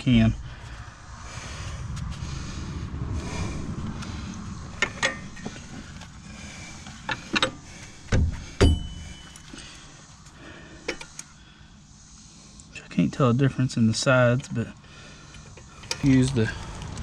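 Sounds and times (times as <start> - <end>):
low rumble: 0.0 - 10.2, 16.0 - 17.0
heavy metal clanks: 7.0 - 9.6
metallic ring: 8.6 - 9.5.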